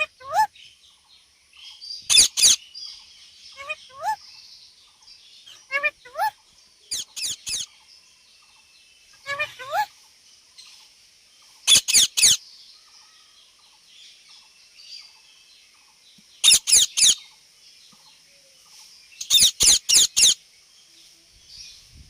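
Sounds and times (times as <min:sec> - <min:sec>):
parrot calling: 0:00.0 - 0:00.5, 0:02.1 - 0:02.6, 0:03.6 - 0:04.2, 0:05.5 - 0:07.7, 0:09.2 - 0:09.9, 0:11.7 - 0:12.4, 0:16.4 - 0:17.2, 0:19.2 - 0:20.4.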